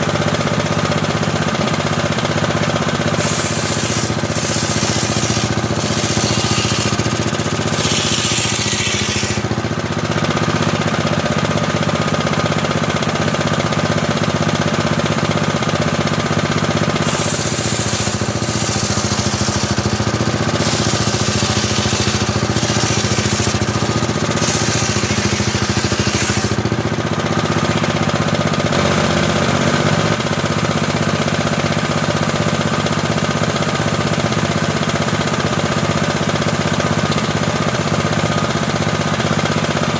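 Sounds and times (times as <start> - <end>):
table saw humming: 2.4 - 10.9, 15.8 - 29.8
saw blade cutting wood hiss: 3.0 - 9.8, 16.9 - 26.8.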